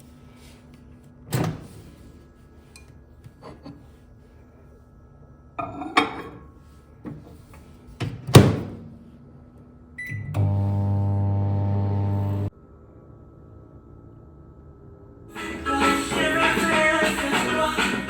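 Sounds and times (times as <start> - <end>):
microwave oven humming: 9.4 - 16.9.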